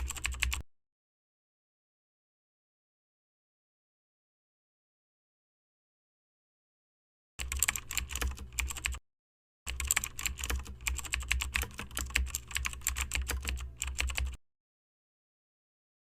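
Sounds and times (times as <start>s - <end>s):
rapid keyboard typing: 0.0s - 0.6s, 7.4s - 9.0s, 9.7s - 14.4s.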